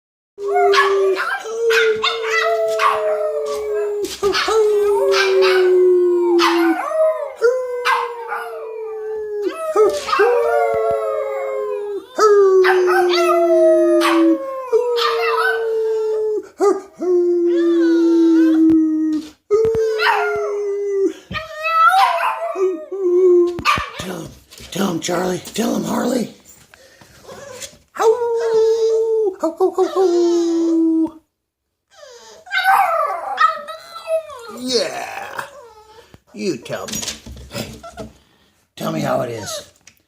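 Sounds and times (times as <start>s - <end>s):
dog howling: 0.4s - 23.0s, 32.5s - 35.9s.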